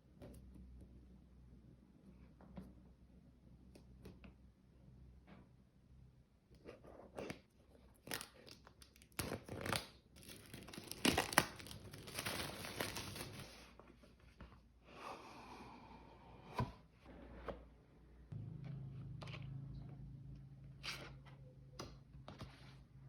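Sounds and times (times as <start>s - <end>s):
packaging torn and crinkled: 8.0s - 13.5s.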